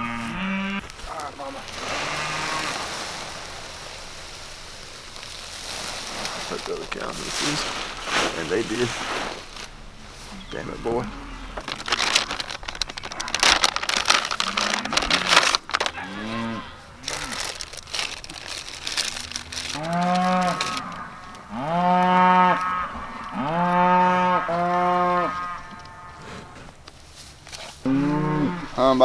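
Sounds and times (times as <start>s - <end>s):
cattle mooing: 0.0s - 3.0s, 10.2s - 17.6s, 19.2s - 26.8s, 27.8s - 29.0s
rustling crackling noise: 0.0s - 29.0s.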